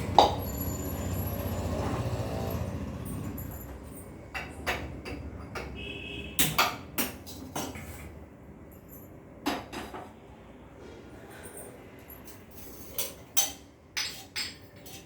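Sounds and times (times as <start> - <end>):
cookware clattering: 12.6 - 15.0.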